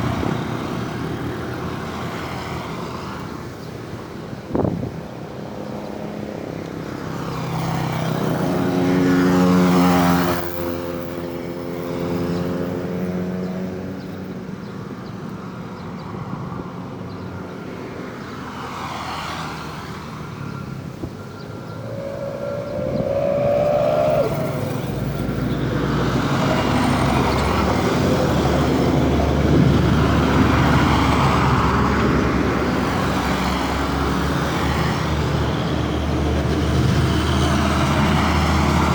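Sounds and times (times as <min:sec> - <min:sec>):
vehicles passing: 0:00.0 - 0:38.9
heavy vehicle rumbling: 0:20.2 - 0:38.9.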